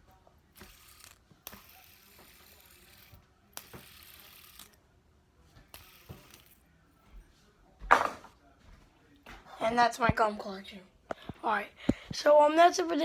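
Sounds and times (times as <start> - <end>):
fidget spinner whirring: 0.5 - 4.8, 5.7 - 6.6.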